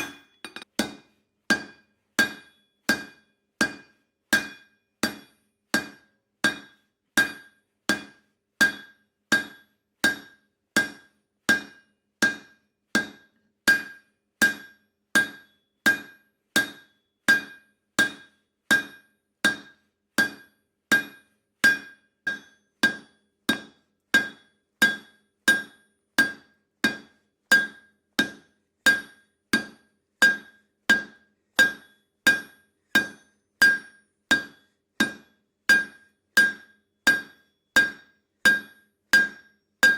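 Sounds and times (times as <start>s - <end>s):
hammer striking steel on anvil: 0.0s - 39.9s.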